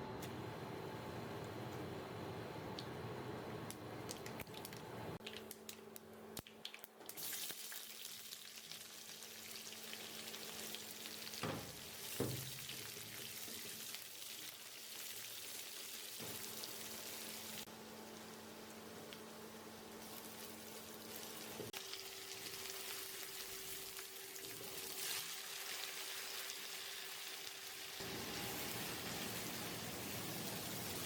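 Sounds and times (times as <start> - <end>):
food sizzling in oil: 7.2 - 31.0.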